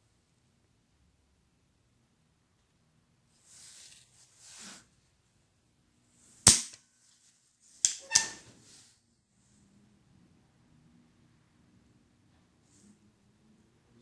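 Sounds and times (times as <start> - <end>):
sharp loud snaps: 6.5 - 6.8, 7.9 - 8.4.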